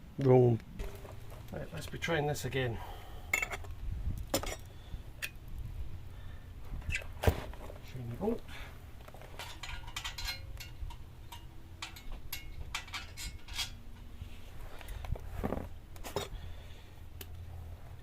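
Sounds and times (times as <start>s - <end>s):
steady low hum: 0.0s - 18.0s
light metallic clicks and clinks: 9.4s - 14.1s.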